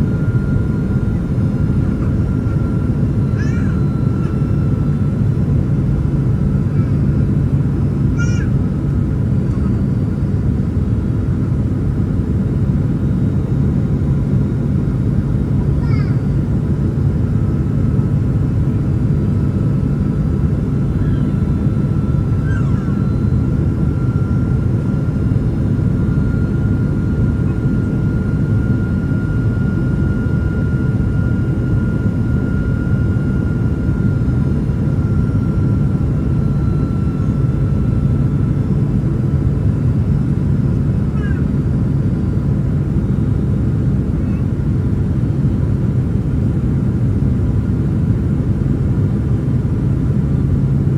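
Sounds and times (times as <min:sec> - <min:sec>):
faint high whine: 0:00.0 - 0:08.4, 0:17.1 - 0:41.2
airliner cabin engine rumble: 0:00.0 - 0:50.9.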